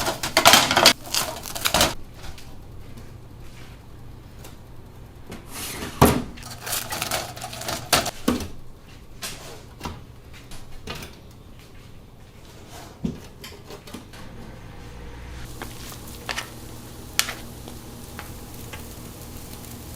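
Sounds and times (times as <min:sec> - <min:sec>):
metal cookware clattering: 0:06.4 - 0:08.6.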